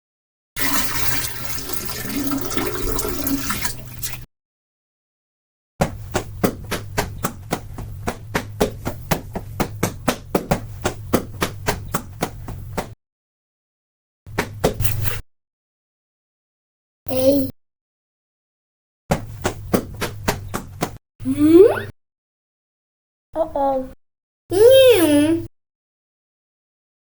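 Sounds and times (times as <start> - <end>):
sharp knocks: 5.8 - 13.0.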